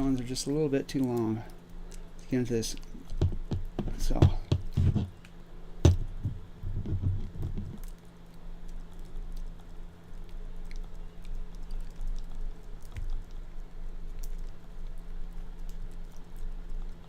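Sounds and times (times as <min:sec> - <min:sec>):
dull handling knocks: 0:03.2 - 0:05.1, 0:05.8 - 0:07.8.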